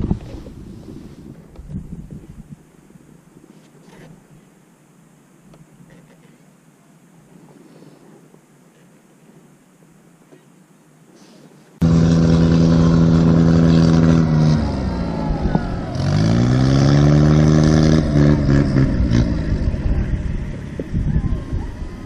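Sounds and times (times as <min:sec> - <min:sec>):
engine running loudly: 0:11.8 - 0:22.0.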